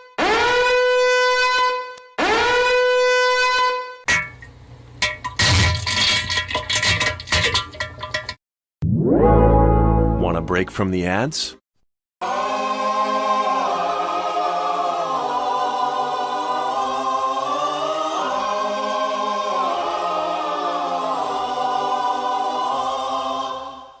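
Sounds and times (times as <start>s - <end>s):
choir singing held chords: 12.2s - 24.0s.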